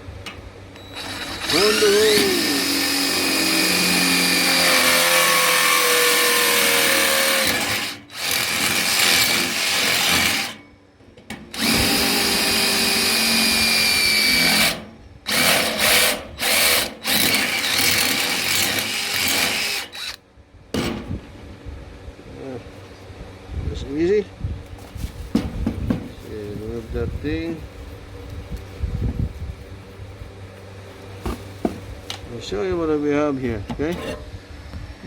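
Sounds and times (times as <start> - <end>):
cordless drill boring through metal: 0.8 - 10.6, 11.5 - 20.2.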